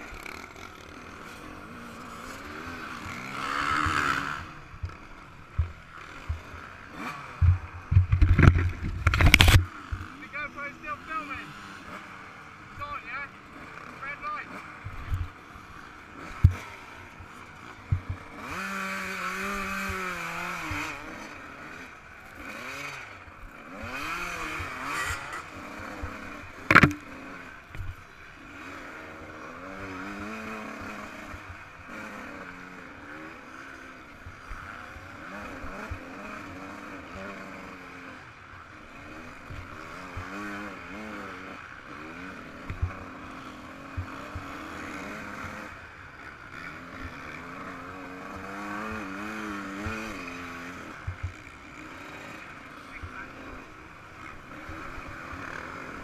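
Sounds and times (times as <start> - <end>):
motocross engine revving: 0.0 - 56.0
sharp knocks: 26.7 - 27.0.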